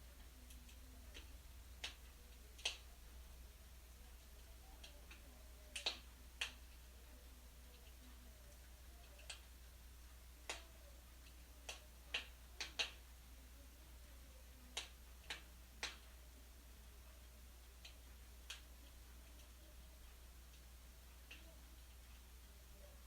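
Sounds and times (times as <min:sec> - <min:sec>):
wood fire crackling: 0:00.0 - 0:23.0.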